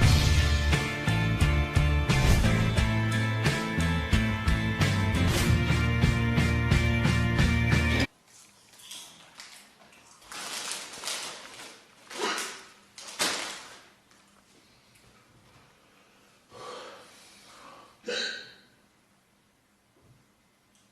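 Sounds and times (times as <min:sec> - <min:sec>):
breathing: 0:14.5 - 0:18.0.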